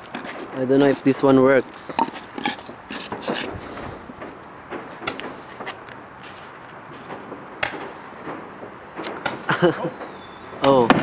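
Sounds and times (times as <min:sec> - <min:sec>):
steady hiss: 0:00.0 - 0:11.0
small firework pops: 0:03.0 - 0:06.0, 0:07.0 - 0:11.0
sharp firework bangs: 0:03.1 - 0:05.8, 0:07.0 - 0:11.0.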